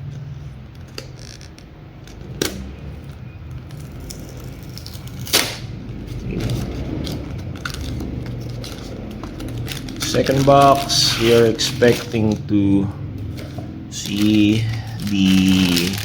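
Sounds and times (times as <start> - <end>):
packaging rustling: 0.8 - 16.0
cardboard snapping: 4.1 - 12.2.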